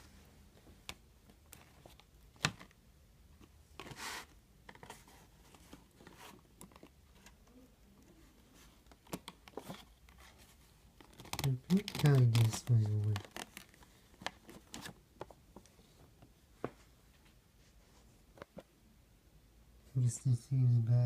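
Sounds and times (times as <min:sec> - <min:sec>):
packaging clicks and taps: 0:08.8 - 0:10.2, 0:11.0 - 0:16.3.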